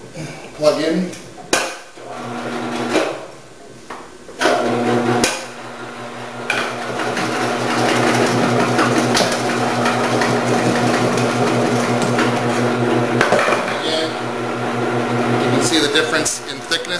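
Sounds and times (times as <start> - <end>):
electric motor humming: 14.0 - 16.9.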